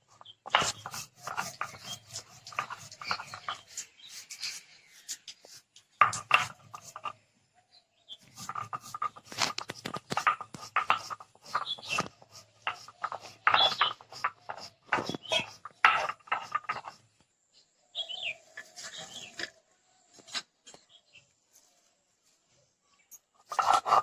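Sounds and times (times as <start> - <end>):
food preparation scraping and knocking: 0.2 - 7.2, 8.2 - 17.2.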